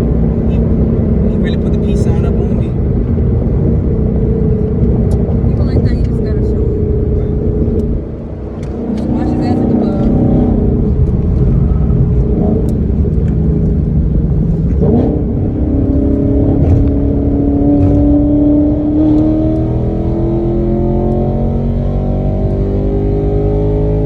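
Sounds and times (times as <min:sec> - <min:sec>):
car engine accelerating: 0:00.0 - 0:24.0.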